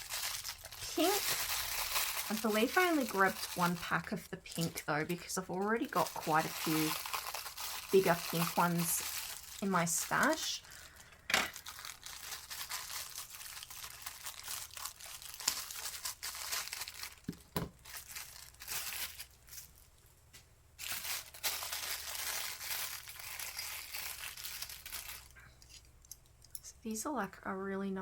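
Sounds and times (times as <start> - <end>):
plastic packaging crinkling: 0.0 - 20.1, 20.8 - 25.9.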